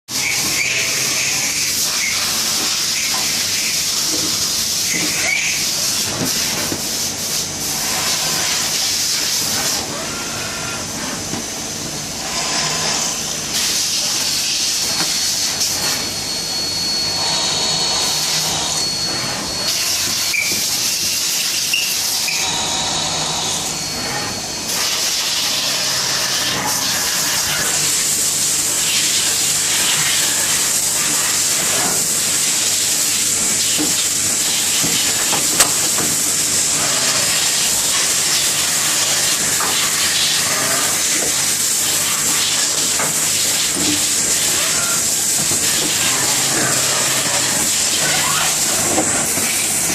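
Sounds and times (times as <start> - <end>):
thin high whine: 14.0 - 49.9
machine tool hissing: 16.8 - 49.9.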